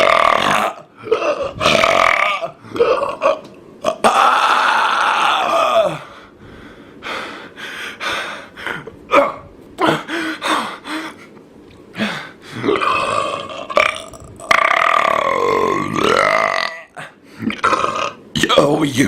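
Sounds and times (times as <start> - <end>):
boy burping: 0.0 - 4.7, 12.6 - 18.2.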